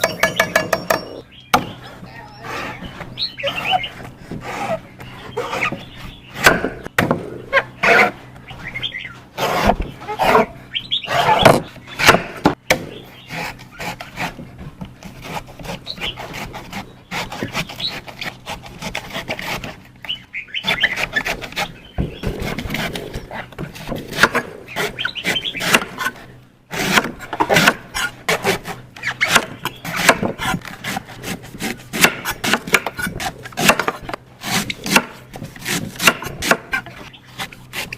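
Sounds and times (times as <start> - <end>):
knife chopping coconut: 20.6 - 37.9.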